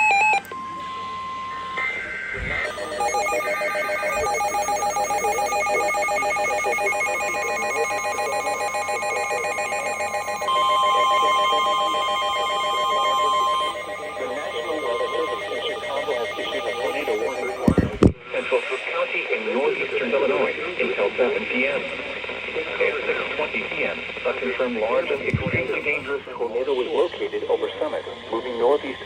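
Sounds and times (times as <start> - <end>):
pulsing electronic alarm: 0.0 - 18.0.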